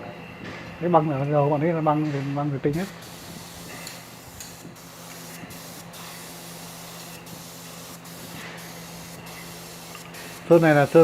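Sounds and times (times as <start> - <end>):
steady low hum: 0.0 - 11.0
paint spray hiss: 2.8 - 11.0.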